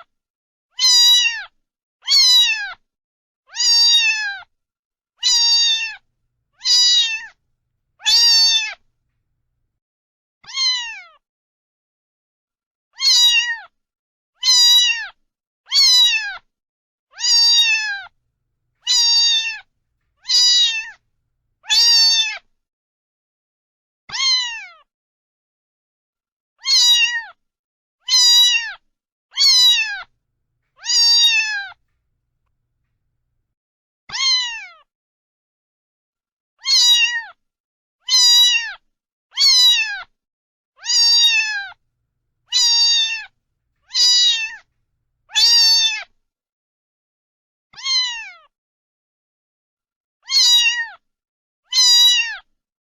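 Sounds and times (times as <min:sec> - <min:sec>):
cat meowing: 0:05.2 - 0:06.0, 0:06.6 - 0:07.4, 0:08.0 - 0:08.8, 0:13.0 - 0:13.4, 0:17.2 - 0:18.1, 0:18.8 - 0:21.0, 0:26.6 - 0:27.2, 0:28.1 - 0:28.7, 0:29.4 - 0:30.1, 0:30.8 - 0:31.8, 0:36.6 - 0:37.2, 0:38.1 - 0:38.6, 0:40.8 - 0:41.8, 0:42.5 - 0:43.3, 0:43.9 - 0:44.6, 0:50.3 - 0:50.8, 0:51.7 - 0:52.3.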